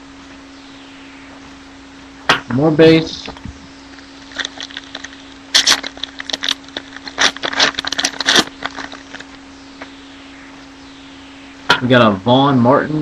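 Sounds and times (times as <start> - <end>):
low electrical hum: 0.0 - 13.0
cards flipped through by hand: 4.3 - 9.4.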